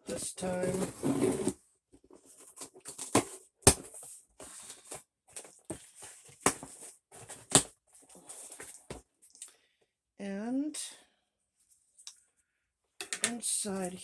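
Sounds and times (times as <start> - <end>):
packaging rustling and crinkling: 0.1 - 9.0.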